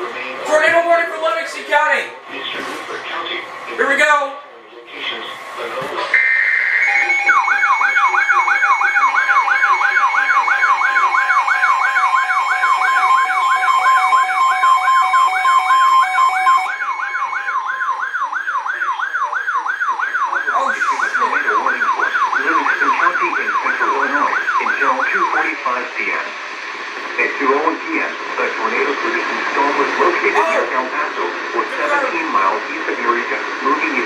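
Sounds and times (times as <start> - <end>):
warbling siren tone: 6.2 - 25.0
steady attention tone: 9.7 - 18.3, 31.6 - 32.4.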